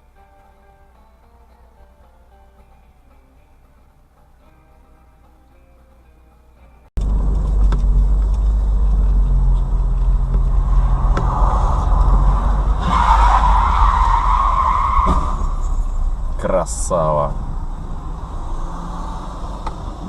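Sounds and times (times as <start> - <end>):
low road rumble: 6.4 - 20.0
engine hum: 7.0 - 20.0
rushing noise: 8.6 - 16.4.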